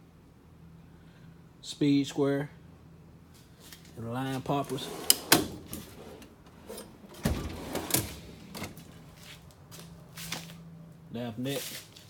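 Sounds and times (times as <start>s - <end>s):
metal drawers sliding: 4.3s - 9.2s
drawers clacking shut: 4.5s - 9.1s.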